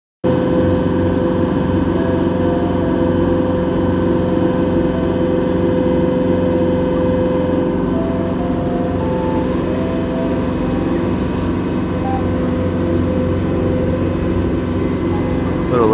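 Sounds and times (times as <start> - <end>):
boat engine droning: 0.3 - 15.9.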